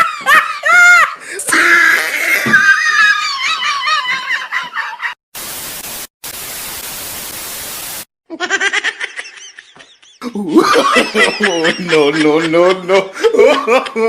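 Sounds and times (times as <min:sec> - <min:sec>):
static hiss: 0:05.4 - 0:08.1
high-pitched laugh: 0:08.3 - 0:14.0.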